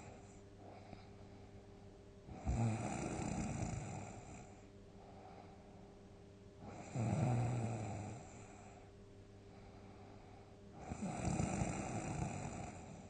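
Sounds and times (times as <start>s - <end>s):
quiet breathing: 0.0s - 13.0s
person snoring loudly: 2.3s - 4.3s, 6.6s - 8.4s, 10.8s - 13.0s.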